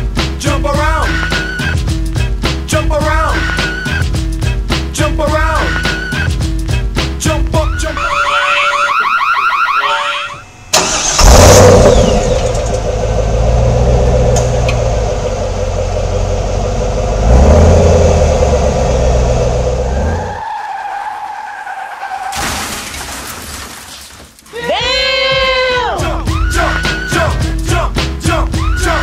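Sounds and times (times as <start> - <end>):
music: 0.0 - 8.8, 24.6 - 29.0
car engine revving: 10.4 - 20.4.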